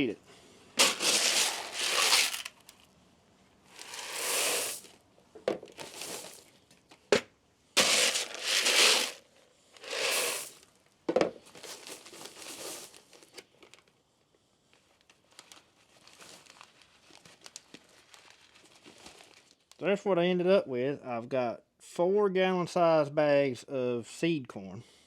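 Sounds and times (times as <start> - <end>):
plastic bags crinkling: 0.8 - 2.9, 3.7 - 4.9, 5.8 - 6.5, 7.8 - 9.2, 9.8 - 10.6, 11.5 - 13.9, 15.0 - 19.8.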